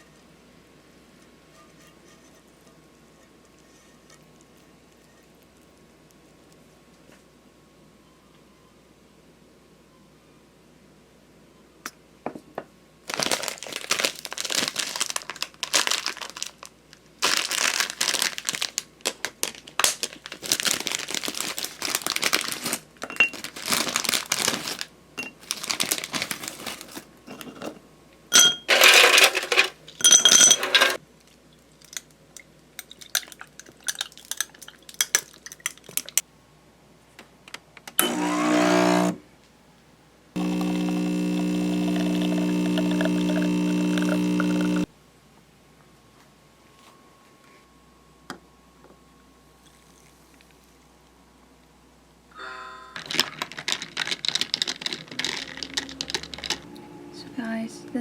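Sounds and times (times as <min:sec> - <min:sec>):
packaging rustling and crinkling: 0:13.1 - 0:27.2, 0:53.0 - 0:56.7
utensils clinking on dishes: 0:27.3 - 0:31.0.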